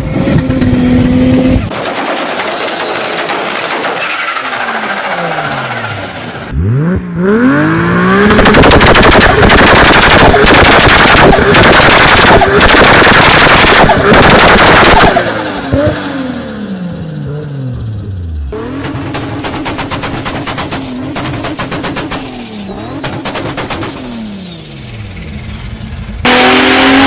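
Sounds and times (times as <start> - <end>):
car engine revving hard: 5.0 - 17.8, 26.2 - 27.0.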